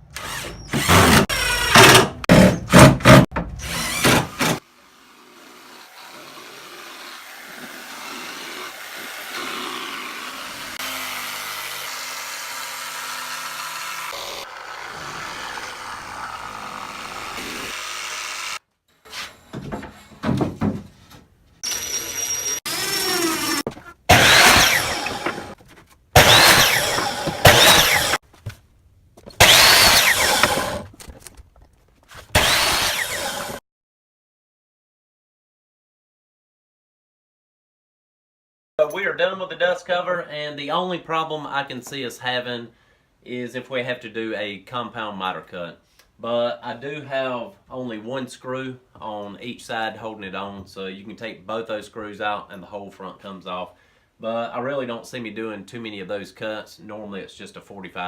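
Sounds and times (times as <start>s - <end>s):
drilling and sawing bursts: 0.0s - 18.6s, 21.6s - 25.6s, 26.2s - 28.2s, 29.4s - 30.8s, 32.3s - 33.6s
power tool running: 3.6s - 18.6s, 21.6s - 25.6s, 26.2s - 28.2s, 29.4s - 30.8s, 32.3s - 33.6s.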